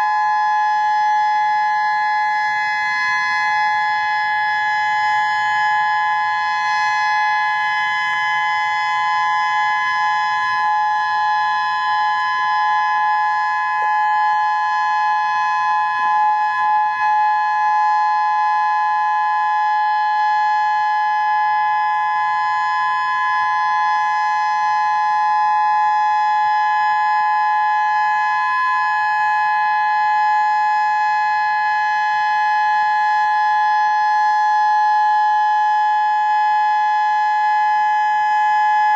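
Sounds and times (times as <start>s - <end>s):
electronic warning siren steady tone: 0.0s - 38.9s.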